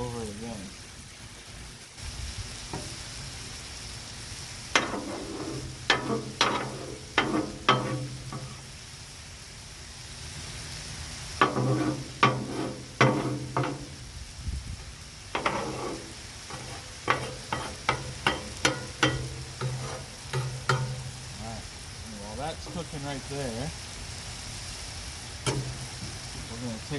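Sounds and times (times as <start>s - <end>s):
eggs sizzling on a griddle: 0.0s - 26.9s
utensil clacking on steel: 5.8s - 8.5s, 11.4s - 13.9s, 15.4s - 21.0s.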